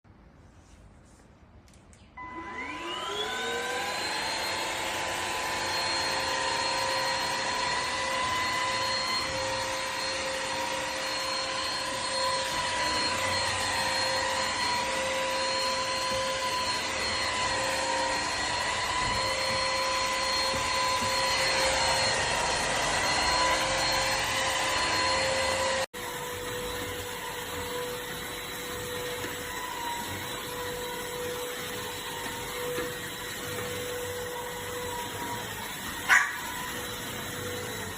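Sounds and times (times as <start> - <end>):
vacuum cleaner motor whining: 2.2 - 37.9.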